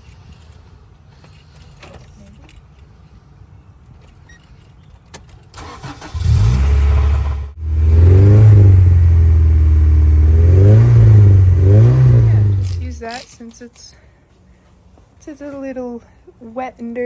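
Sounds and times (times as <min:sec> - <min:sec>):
engine cranking: 0:04.1 - 0:13.4
car engine running and revving: 0:06.0 - 0:13.0.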